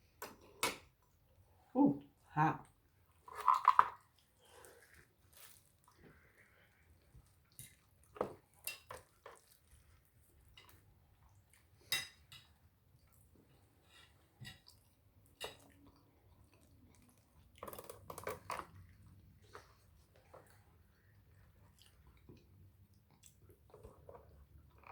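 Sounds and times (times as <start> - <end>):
chewing: 4.0 - 11.9, 13.0 - 24.9.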